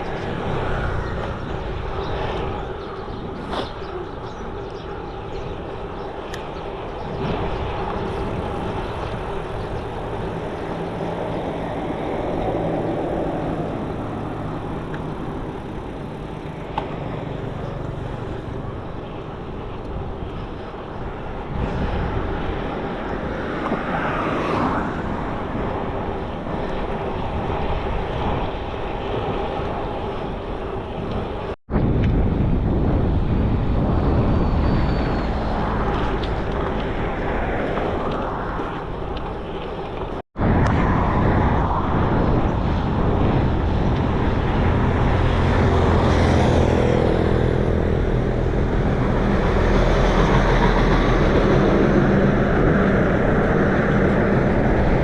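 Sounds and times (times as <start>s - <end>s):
vehicle engine humming: 0.0s - 24.4s, 43.4s - 55.0s
bicycle road and wind noise: 0.0s - 55.0s.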